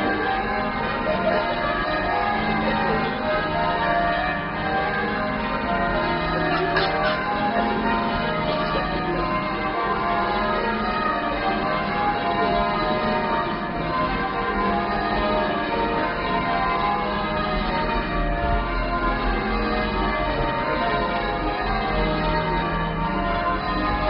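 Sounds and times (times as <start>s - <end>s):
church bells pealing: 0.0s - 24.0s.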